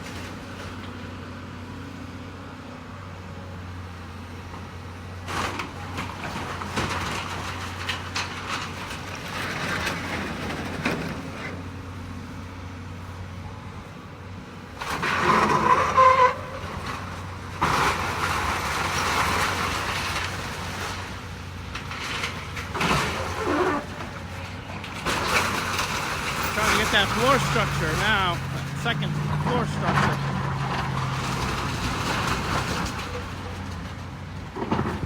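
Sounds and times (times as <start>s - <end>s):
excavator diesel engine running: 0.0s - 35.0s
debris crunching and clattering: 5.3s - 11.6s, 14.8s - 35.0s.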